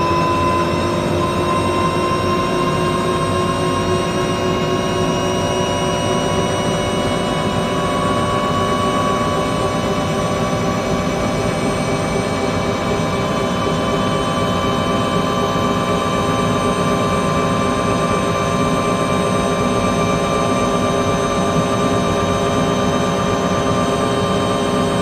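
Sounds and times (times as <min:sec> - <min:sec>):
helicopter whine: 0:00.0 - 0:25.0.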